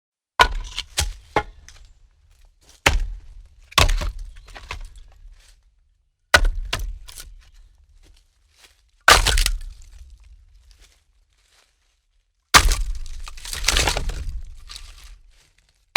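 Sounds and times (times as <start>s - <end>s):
wooden logs clattering: 0.4s - 5.5s, 9.1s - 10.4s, 12.6s - 15.5s.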